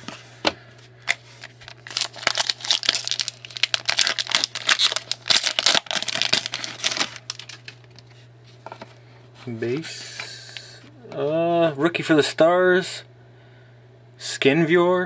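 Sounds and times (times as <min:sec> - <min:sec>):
plastic wrapping crinkling: 0:01.0 - 0:08.8.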